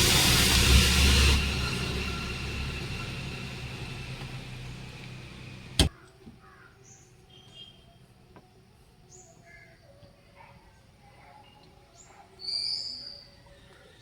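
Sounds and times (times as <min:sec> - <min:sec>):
vehicle engine running: 0:00.0 - 0:05.9
faint bird chirps: 0:06.0 - 0:08.2, 0:09.1 - 0:14.0.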